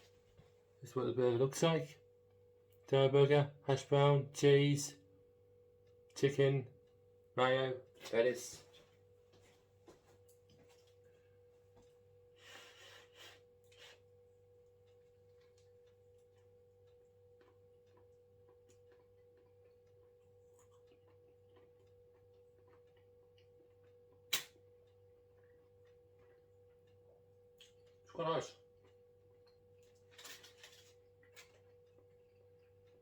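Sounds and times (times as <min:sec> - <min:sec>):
faint steady hum: 0:00.0 - 0:33.0
sharp click: 0:24.3 - 0:24.6.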